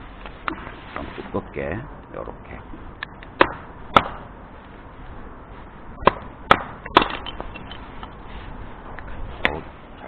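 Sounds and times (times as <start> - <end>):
hatchet chopping firewood: 3.0 - 4.3, 6.0 - 8.1.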